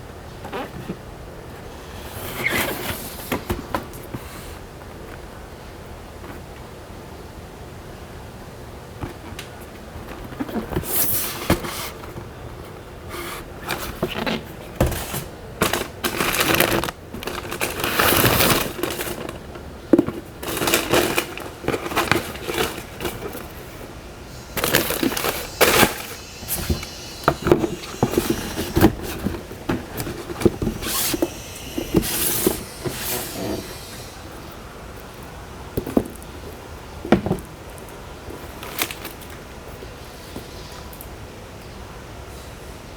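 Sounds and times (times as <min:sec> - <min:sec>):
packaging rustling and crinkling: 0:13.2 - 0:34.5.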